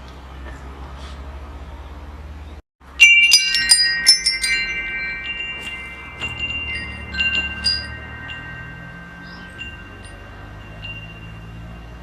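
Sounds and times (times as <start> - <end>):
wind chimes ringing: 2.9 - 12.0.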